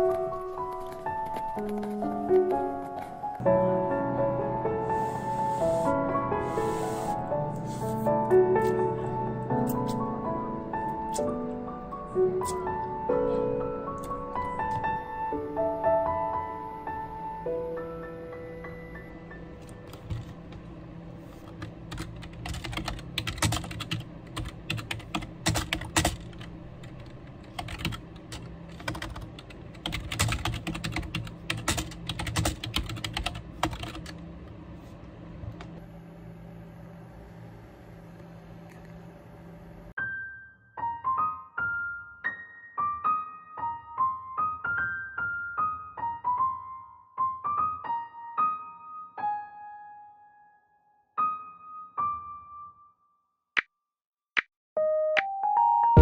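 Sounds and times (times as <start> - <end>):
rapid keyboard typing: 0.0 - 3.2, 19.6 - 20.4, 21.4 - 34.2
soft background music: 0.0 - 27.8
solo piano melody: 0.0 - 34.0, 40.0 - 53.2, 54.8 - 56.0.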